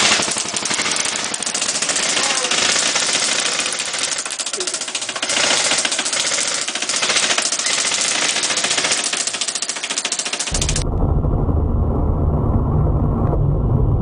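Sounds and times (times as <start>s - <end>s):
airsoft gun rapid fire: 0.0s - 10.8s.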